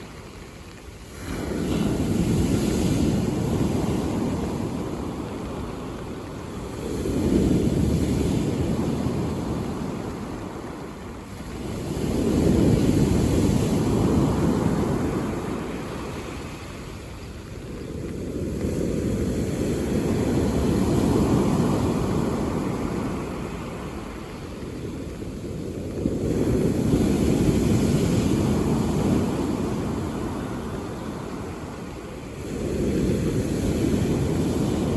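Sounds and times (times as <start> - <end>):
sea waves breaking on pebbles: 0.0 - 24.3.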